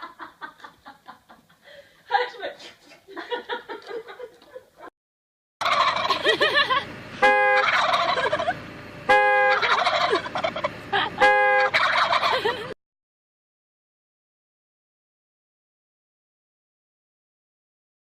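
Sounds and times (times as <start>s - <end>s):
loud turkey calls: 5.6s - 6.3s, 7.2s - 8.6s, 9.4s - 12.6s
turkeys gobbling: 5.6s - 8.6s, 9.4s - 10.7s, 11.6s - 12.8s.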